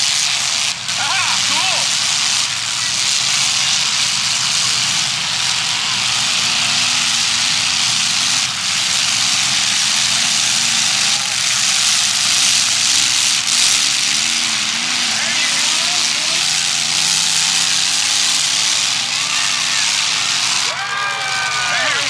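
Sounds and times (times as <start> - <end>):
car engines running: 0.0 - 22.0.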